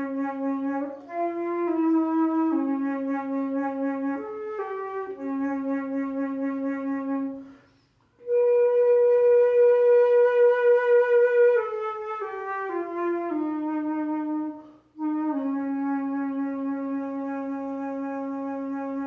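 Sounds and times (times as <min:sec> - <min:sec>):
wind instrument slow melody: 0:00.0 - 0:19.0.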